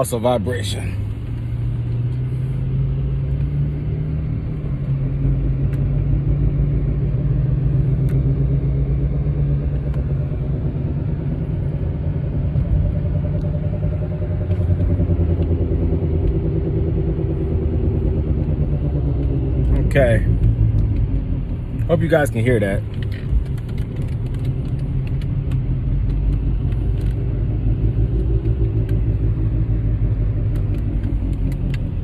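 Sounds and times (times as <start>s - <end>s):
wheel bearing rumble and drone: 0.0s - 32.0s.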